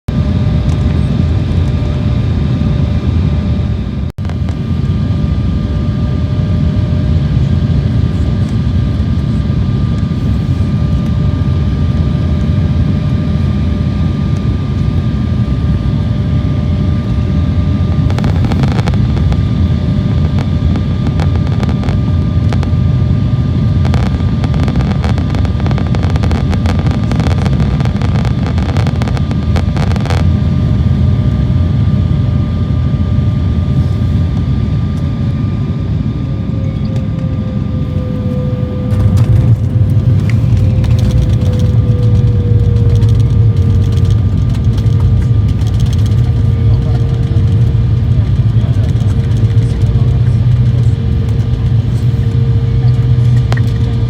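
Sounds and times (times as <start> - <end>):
jet engines and airflow roaring: 0.1 - 54.0.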